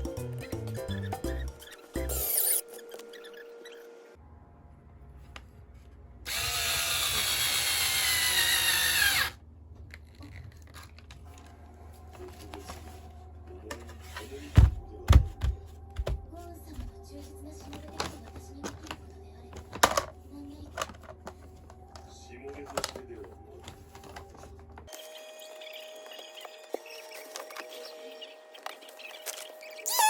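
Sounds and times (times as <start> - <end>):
power drill whining: 6.3 - 9.4.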